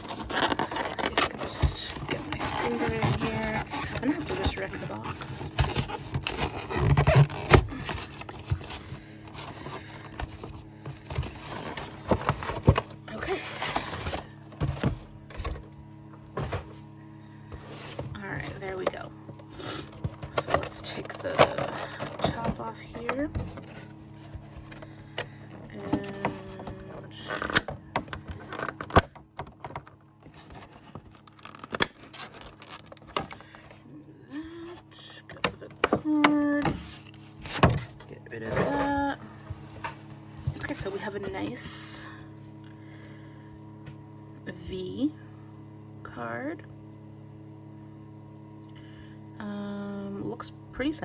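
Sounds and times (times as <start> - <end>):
cardboard box being torn open: 0.0 - 8.9.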